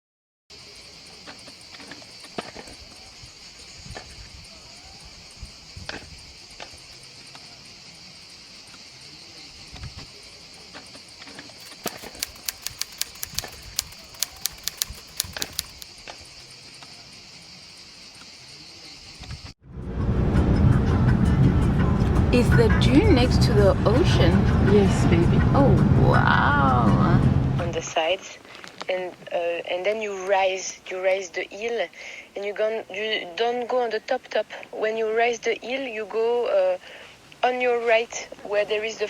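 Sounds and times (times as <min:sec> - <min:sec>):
insects chirring: 0:00.6 - 0:19.5
sharp clicks: 0:11.6 - 0:15.9.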